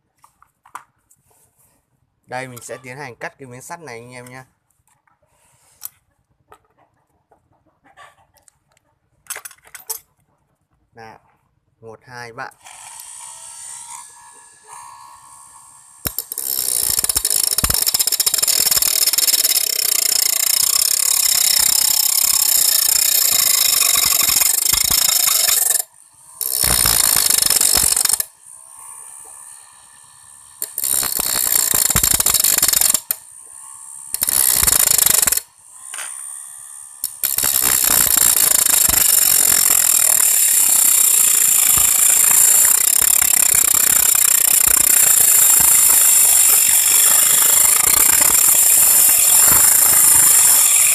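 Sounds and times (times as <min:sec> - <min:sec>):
blade grinding through iron: 0:12.6 - 0:50.9.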